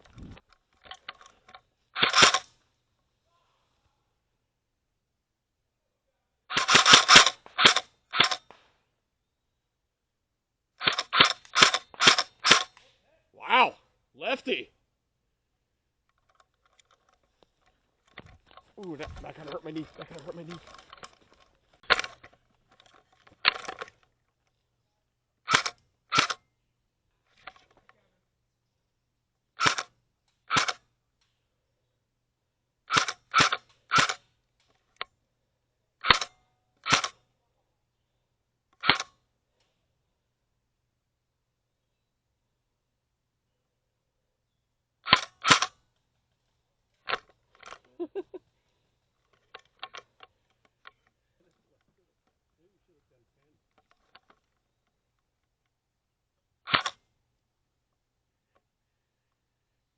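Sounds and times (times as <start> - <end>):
airsoft gun shots: 2.0 - 2.5, 6.5 - 8.5, 10.8 - 12.8, 25.5 - 26.4, 29.6 - 29.9, 32.9 - 34.2, 36.9 - 37.2, 45.1 - 45.8.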